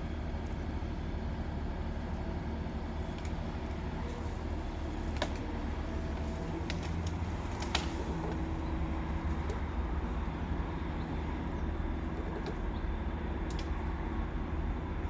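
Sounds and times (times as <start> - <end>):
crane engine droning: 0.0 - 15.0.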